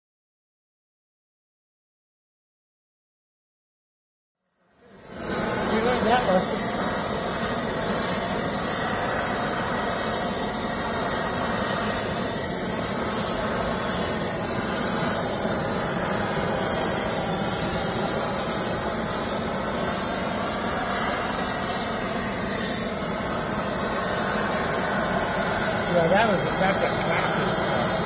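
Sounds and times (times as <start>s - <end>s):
torch flame hissing: 4.5s - 28.0s.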